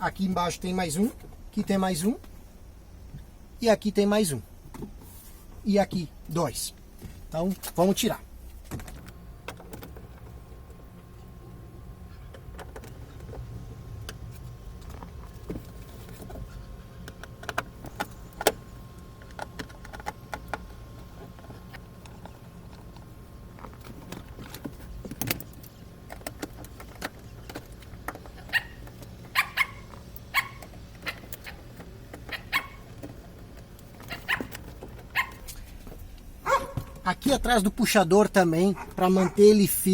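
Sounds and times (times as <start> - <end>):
dog barking: 28.5 - 31.6, 32.3 - 32.9, 34.1 - 34.5, 35.1 - 35.5, 36.4 - 37.0, 38.7 - 39.5.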